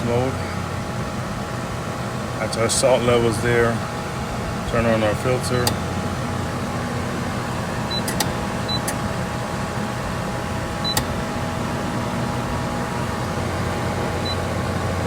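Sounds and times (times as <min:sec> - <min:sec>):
pool pump motor humming: 0:00.0 - 0:15.0
control panel clicks: 0:05.5 - 0:05.9, 0:07.8 - 0:09.3, 0:10.8 - 0:14.4.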